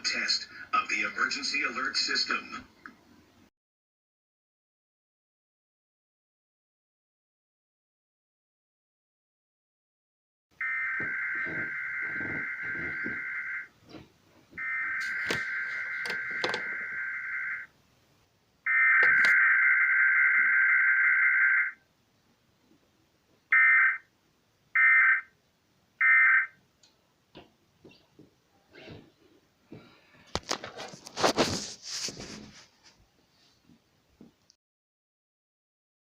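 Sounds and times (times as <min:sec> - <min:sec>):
buzzy warbling data tones: 0:10.6 - 0:13.7.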